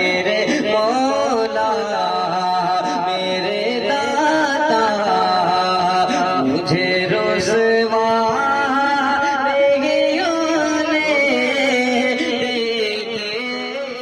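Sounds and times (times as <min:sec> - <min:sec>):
person singing devotional song: 0:00.0 - 0:14.0.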